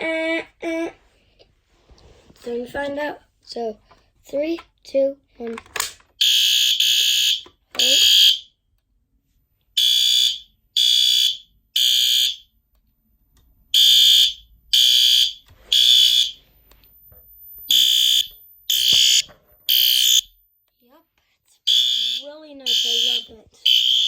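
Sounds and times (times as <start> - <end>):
high alarm horn blasts: 13.7 - 16.6, 17.6 - 20.4, 21.7 - 24.0.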